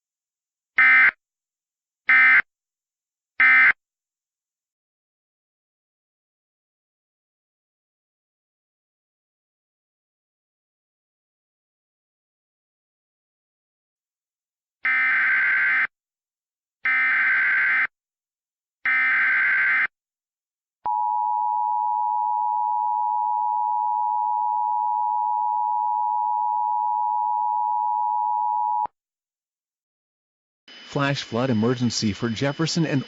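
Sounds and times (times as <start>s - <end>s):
screeching data tones: 30.7s - 33.0s.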